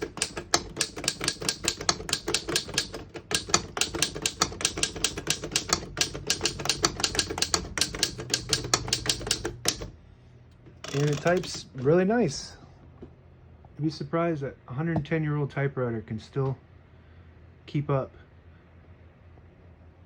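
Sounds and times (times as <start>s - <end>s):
typewriter keys clacking: 0.0s - 9.9s, 10.8s - 11.7s.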